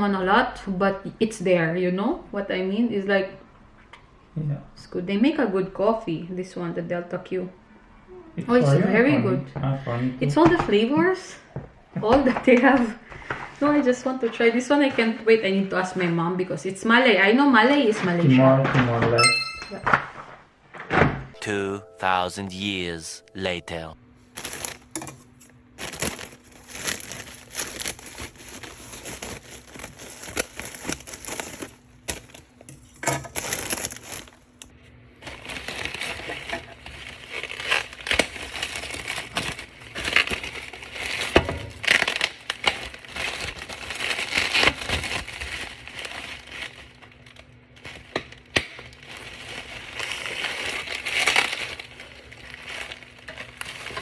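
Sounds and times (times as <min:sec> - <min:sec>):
crinkling and crunching: 0:24.3 - 0:54.0.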